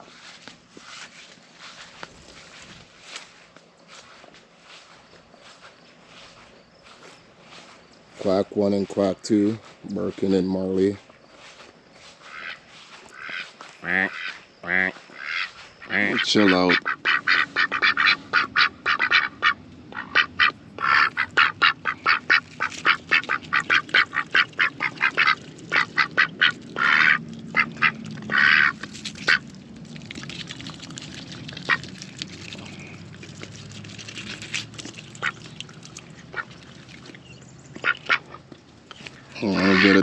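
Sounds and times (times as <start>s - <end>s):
ducks quacking: 12.0s - 29.5s, 31.0s - 33.0s, 34.3s - 40.0s.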